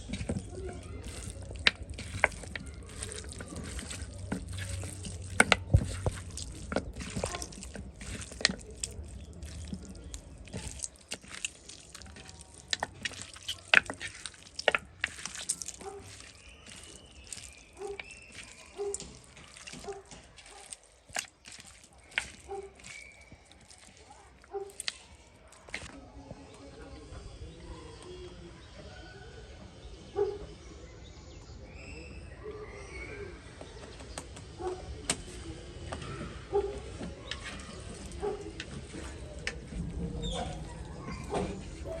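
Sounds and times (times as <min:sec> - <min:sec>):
water splashing and dripping: 0:00.0 - 0:25.9.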